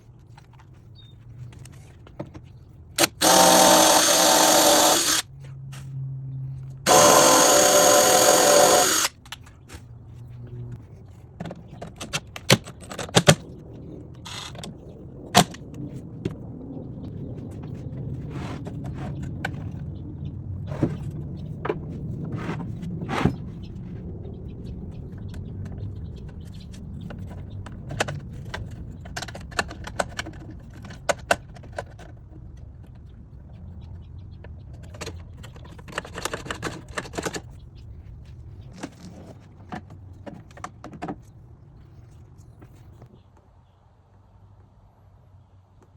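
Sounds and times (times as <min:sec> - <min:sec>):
low hum: 0:00.0 - 0:11.9
hard parts clicking and rattling: 0:01.4 - 0:05.3, 0:06.8 - 0:09.8, 0:11.3 - 0:13.5, 0:14.2 - 0:15.7, 0:25.7 - 0:33.2, 0:34.4 - 0:37.8.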